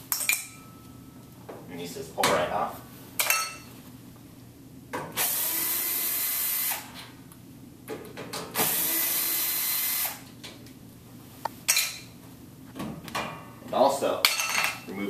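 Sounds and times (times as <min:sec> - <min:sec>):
power drill running: 0:05.2 - 0:06.9, 0:08.6 - 0:10.2.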